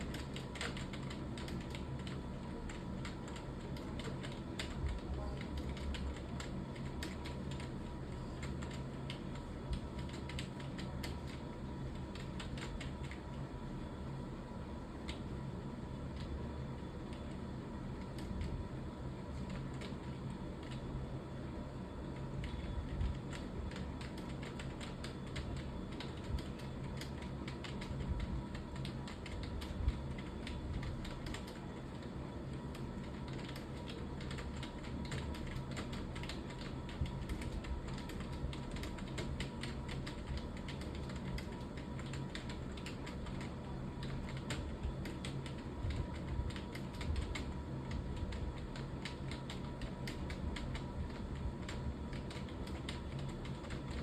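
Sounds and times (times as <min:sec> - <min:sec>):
keyboard typing clicks: 0:00.0 - 0:07.7, 0:08.4 - 0:11.4, 0:22.4 - 0:32.1, 0:32.7 - 0:54.0
low steady hum: 0:00.0 - 0:54.0.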